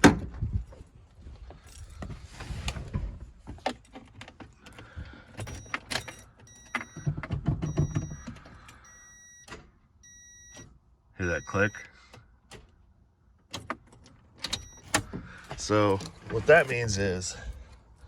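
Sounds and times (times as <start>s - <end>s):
car warning chime beeping: 5.4s - 12.0s, 14.4s - 15.1s.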